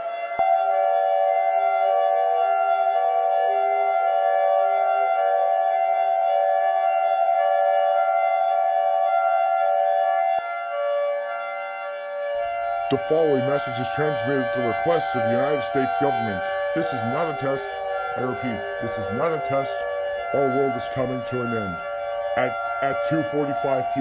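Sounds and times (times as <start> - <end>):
civil defense siren steady tone: 0.0 - 24.0.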